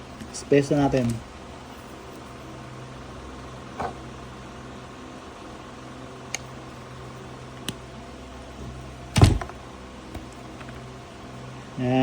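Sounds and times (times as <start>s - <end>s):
steady low hum: 0.0s - 12.0s
loud knock: 9.2s - 9.6s.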